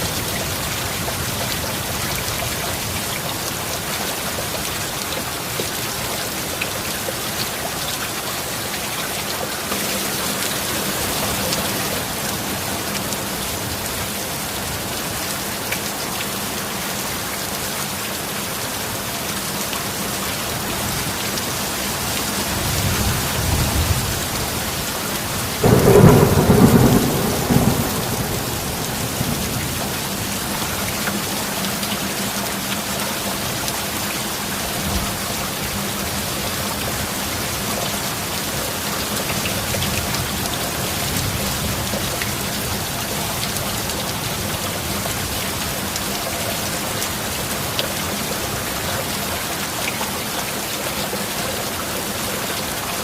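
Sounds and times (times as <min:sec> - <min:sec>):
heavy rain: 0:00.0 - 0:53.0
thunder rumbling: 0:25.4 - 0:31.3
loud thunder clap: 0:25.6 - 0:30.3.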